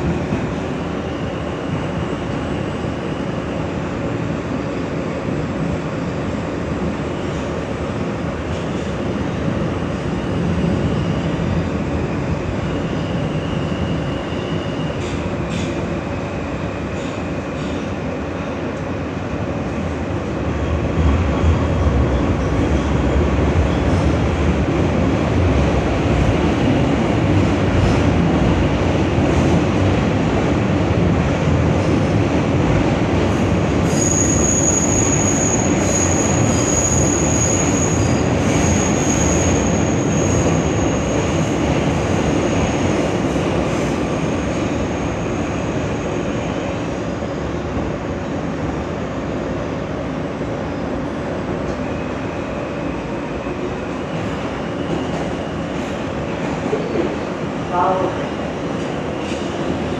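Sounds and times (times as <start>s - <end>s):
high wheel squeal: 33.9s - 41.2s.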